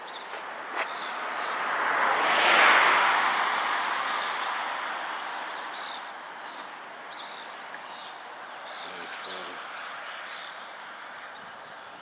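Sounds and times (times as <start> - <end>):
vehicle passing by: 0.1 - 11.7.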